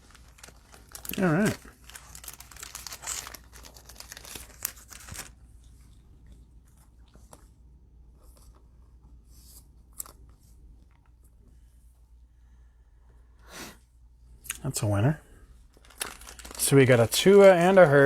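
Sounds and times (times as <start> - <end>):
plastic wrapping crinkling and tearing: 0.0 - 5.6, 15.7 - 18.0.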